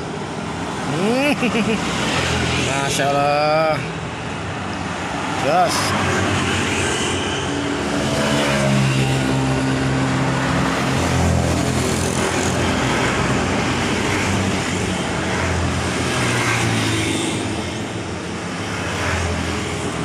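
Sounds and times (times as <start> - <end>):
road traffic: 0.0 - 20.0.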